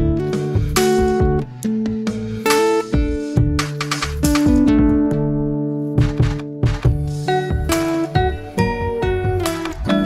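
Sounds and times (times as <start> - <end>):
acoustic guitar strumming chords: 0.0 - 10.0.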